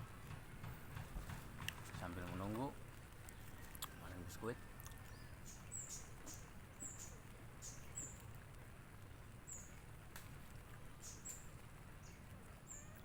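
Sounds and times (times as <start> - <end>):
small bird chirping: 4.8 - 8.3, 9.4 - 9.8, 10.9 - 13.0.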